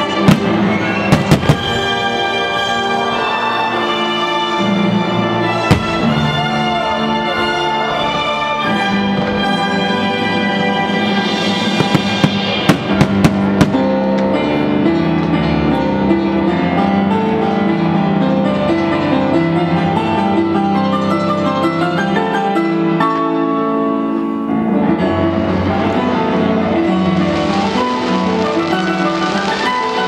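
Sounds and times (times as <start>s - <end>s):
music with sustained chords: 0.0s - 30.0s
sharp bangs: 11.5s - 14.4s.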